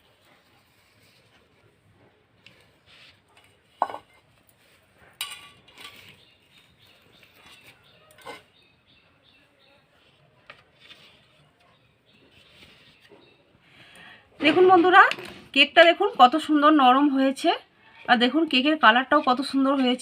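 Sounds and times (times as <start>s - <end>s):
dishes and utensils clinking: 3.4s - 4.3s, 5.2s - 6.2s, 7.3s - 8.6s.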